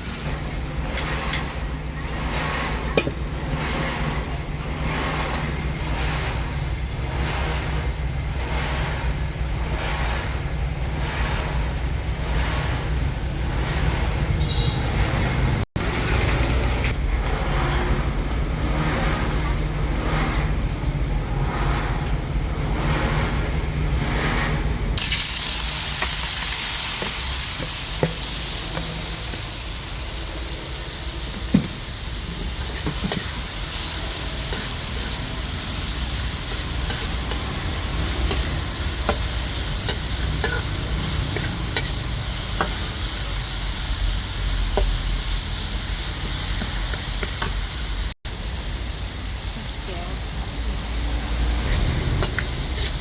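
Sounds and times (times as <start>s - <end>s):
chicken sizzling in hot oil: 25.0s - 53.0s.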